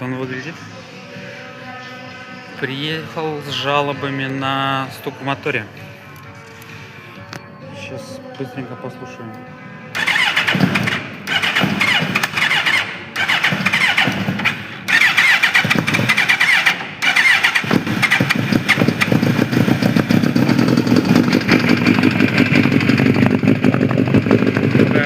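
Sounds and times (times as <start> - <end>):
motorcycle engine running: 9.9 - 25.0
motorcycle starter cranking: 10.0 - 24.8.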